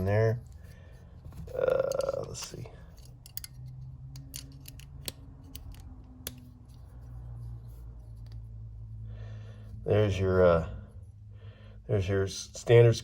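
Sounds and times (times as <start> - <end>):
low steady hum: 0.0 - 13.0
multitool clicking and scraping: 1.9 - 7.2.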